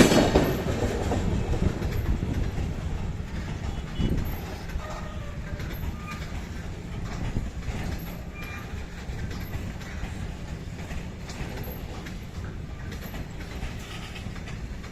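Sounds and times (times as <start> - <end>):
train wheels rattling on rails: 0.0 - 14.9
wheel squeals: 3.3 - 12.2.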